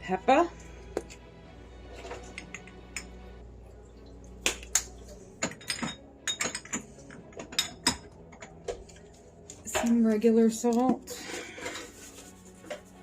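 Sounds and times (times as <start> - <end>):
kitchen utensils clinking: 1.9 - 3.2, 4.7 - 8.8.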